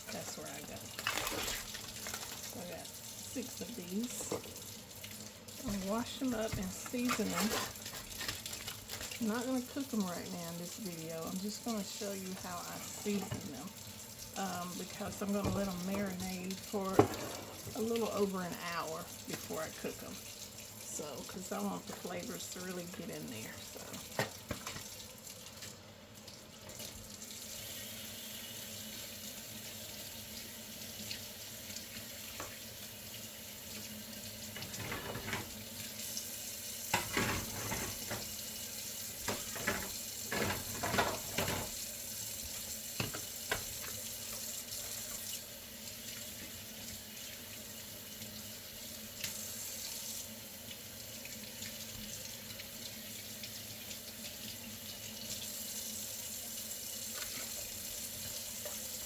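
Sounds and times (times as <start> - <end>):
splashes and knocks: 0.5 - 2.6, 15.0 - 18.2, 39.2 - 41.8
tap running into sink: 3.6 - 4.7, 5.6 - 9.2, 13.1 - 13.7, 14.9 - 18.1, 23.7 - 25.0, 31.9 - 32.8, 33.7 - 35.7, 39.2 - 45.3.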